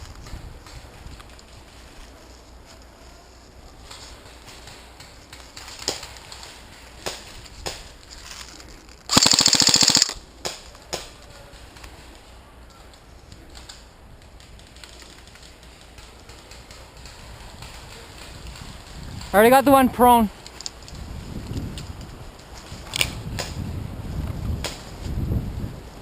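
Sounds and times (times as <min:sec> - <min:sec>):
airsoft gun full-auto burst: 0:09.1 - 0:10.2.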